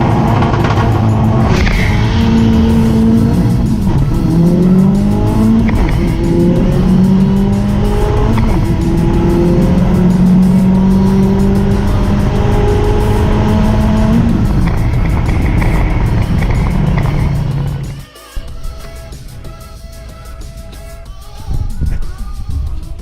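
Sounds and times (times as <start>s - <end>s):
race car engine accelerating: 0.0s - 22.8s.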